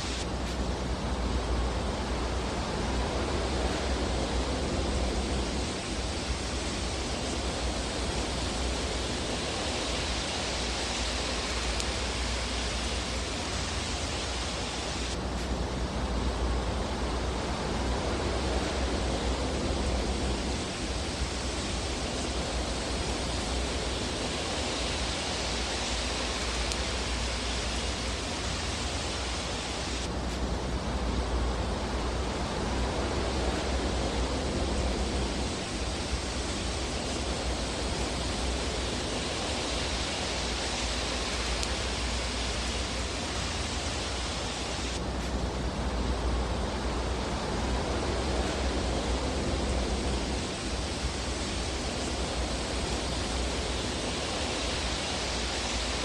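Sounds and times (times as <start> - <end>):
fireplace rumble and hiss: 0.0 - 56.0.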